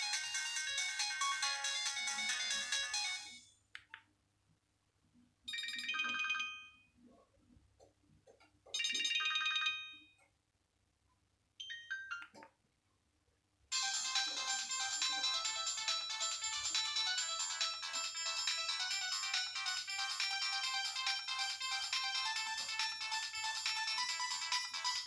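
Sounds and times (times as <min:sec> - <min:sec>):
phone ringtone melodies: 0:00.0 - 0:03.4, 0:05.5 - 0:06.8, 0:08.8 - 0:10.0, 0:13.7 - 0:25.0.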